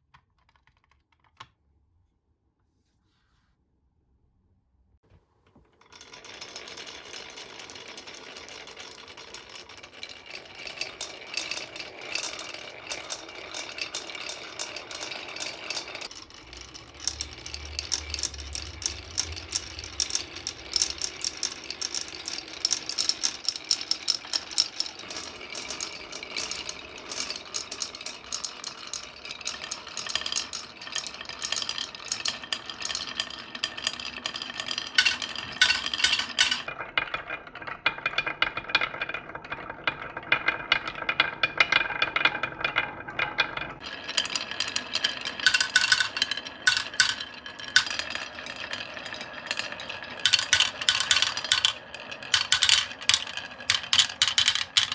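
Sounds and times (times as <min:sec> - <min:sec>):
marbles rolling down track: 0:05.8 - 0:37.4, 0:43.5 - 0:54.9.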